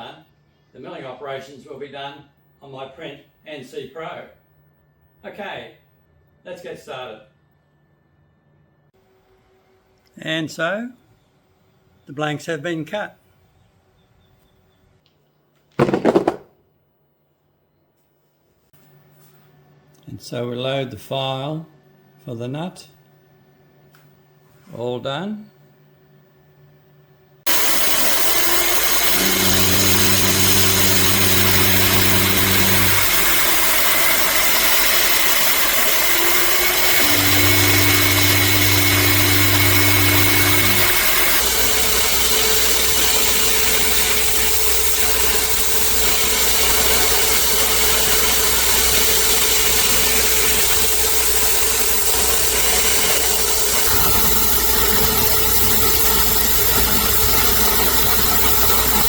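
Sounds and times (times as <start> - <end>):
metal lathe running: 27.5 - 59.0
low hum: 36.2 - 59.0.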